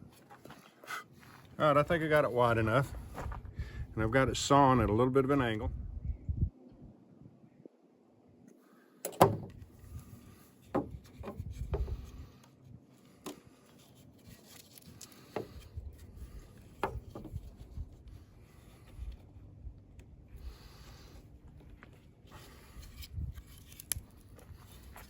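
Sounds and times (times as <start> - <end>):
wood rubbing: 9.3 - 12.5, 13.2 - 19.1
wooden branch knocking: 10.7 - 12.0, 16.8 - 17.5.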